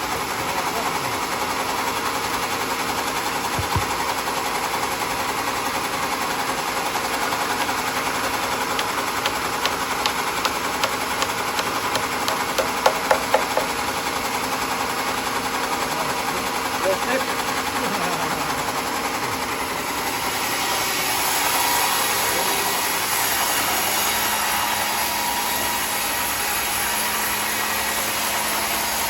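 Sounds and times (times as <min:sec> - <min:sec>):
sawmill machinery running: 0:00.0 - 0:29.0
low knock: 0:09.2 - 0:13.8.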